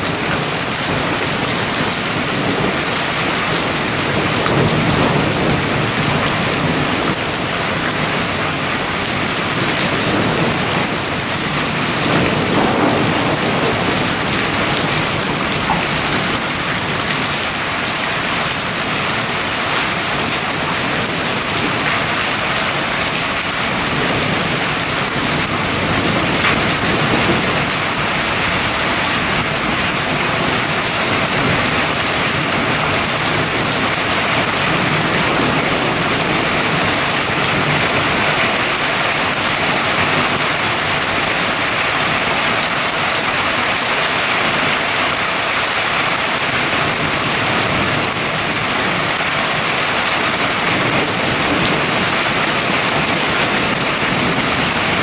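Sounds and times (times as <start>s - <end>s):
heavy rain falling: 0.0s - 55.0s
rumble of thunder: 0.4s - 17.7s, 23.5s - 41.9s.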